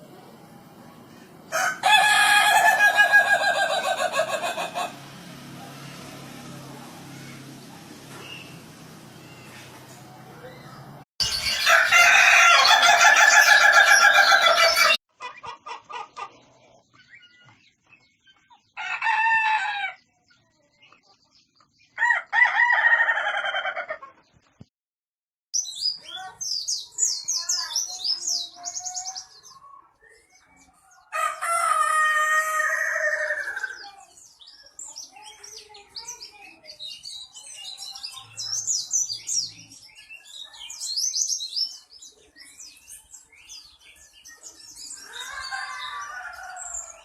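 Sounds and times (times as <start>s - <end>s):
roosters crowing: 1.5s - 10.3s, 11.2s - 15.0s, 18.8s - 20.0s, 22.0s - 24.0s, 31.1s - 33.9s, 45.0s - 47.0s
high chirps: 10.4s - 15.0s.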